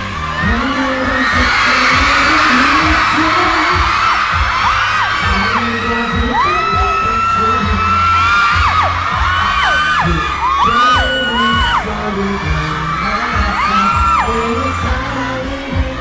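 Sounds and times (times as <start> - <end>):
audience screaming and whooping: 0.0 - 16.0
pop song with singing: 0.0 - 16.0.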